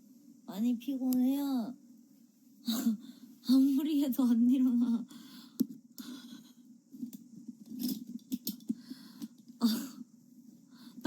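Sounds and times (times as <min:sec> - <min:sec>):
woman breathing in sleep: 0:05.1 - 0:06.7, 0:08.7 - 0:11.0.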